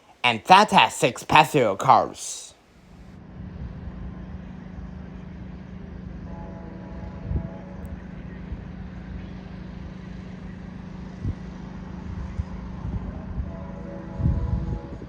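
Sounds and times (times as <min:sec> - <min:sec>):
diesel train humming and rumbling: 0:03.2 - 0:15.0.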